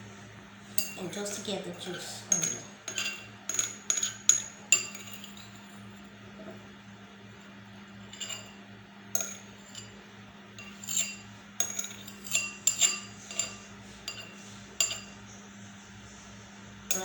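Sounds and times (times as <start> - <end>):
steady low hum: 0.0 - 17.0
metal utensil clinking on glass: 2.3 - 5.6, 8.0 - 8.6, 9.2 - 10.0, 10.6 - 15.2.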